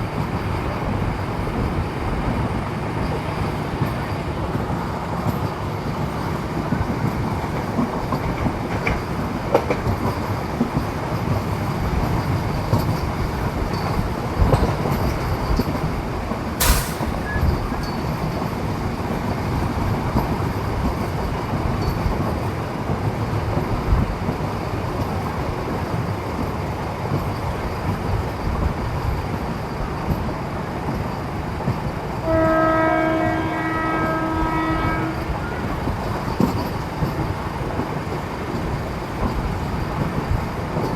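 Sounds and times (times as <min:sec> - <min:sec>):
train rumbling on rails: 0:00.0 - 0:40.9
train horn: 0:32.2 - 0:35.9.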